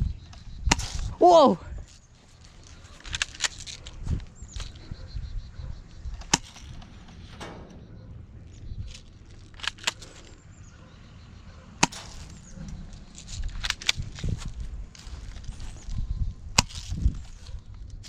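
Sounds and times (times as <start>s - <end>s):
airsoft gun shots: 11.8s - 14.1s.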